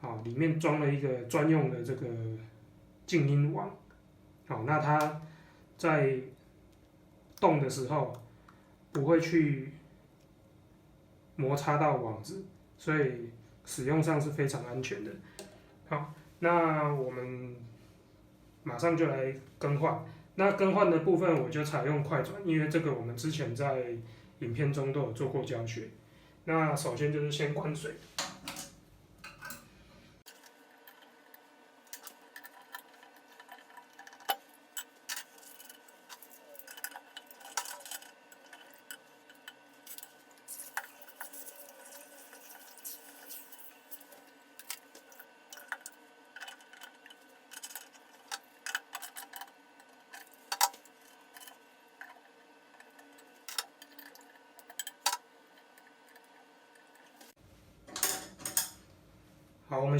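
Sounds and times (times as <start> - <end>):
tools clinking on metal faucet parts: 57.9 - 58.8.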